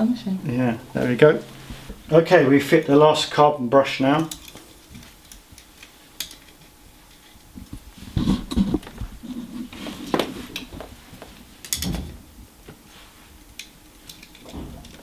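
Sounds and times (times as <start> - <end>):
knocks of handling parts: 11.6 - 12.8.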